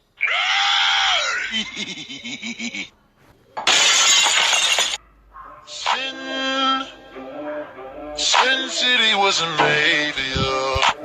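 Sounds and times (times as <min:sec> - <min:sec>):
crashing shattering noise: 0:03.6 - 0:05.0.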